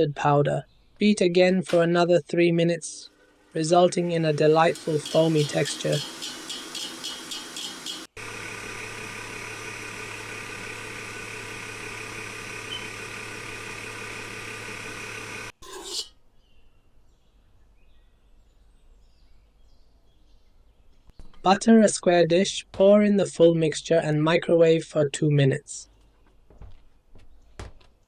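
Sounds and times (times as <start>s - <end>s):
electric mixer beating batter: 3.0s - 15.6s.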